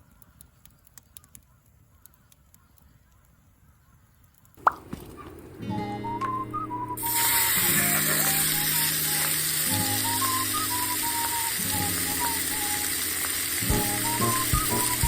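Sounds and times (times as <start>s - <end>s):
whistle-like background music: 5.6s - 15.0s
fire crackling hiss: 7.0s - 15.0s.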